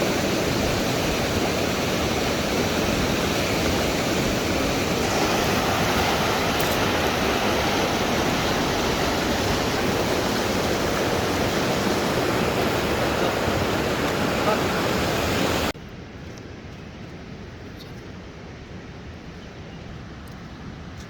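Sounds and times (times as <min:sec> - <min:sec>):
river water rushing: 0:00.0 - 0:15.8.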